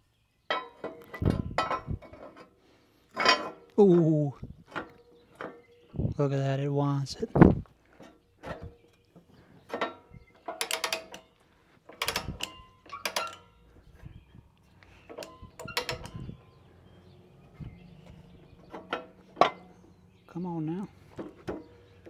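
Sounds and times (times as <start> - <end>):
ratchet metallic clicks and clanks: 9.7 - 19.8.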